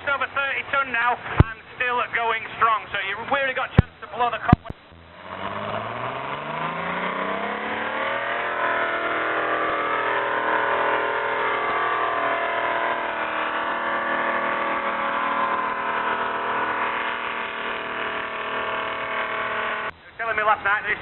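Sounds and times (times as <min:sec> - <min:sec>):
tractor engine under heavy load: 0:00.0 - 0:21.0.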